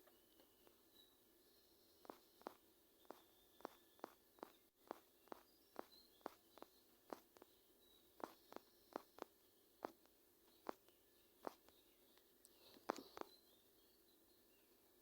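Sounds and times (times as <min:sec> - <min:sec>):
finger tapping touchscreen: 0:02.1 - 0:07.5, 0:08.2 - 0:10.8.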